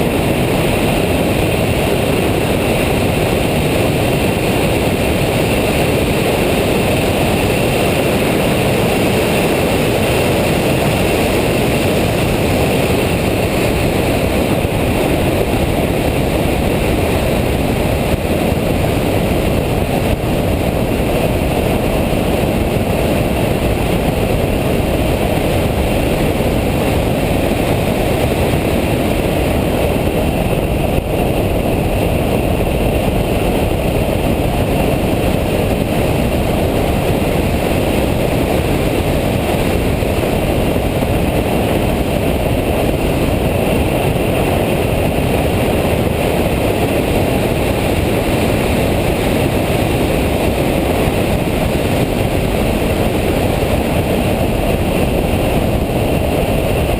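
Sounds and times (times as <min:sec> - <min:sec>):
in-car engine wind and tyre noise: 0:00.0 - 0:56.9.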